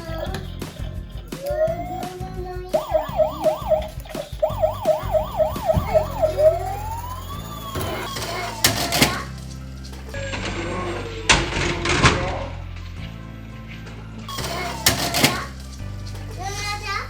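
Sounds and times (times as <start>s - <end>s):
police siren yelp and wail: 1.4s - 9.4s.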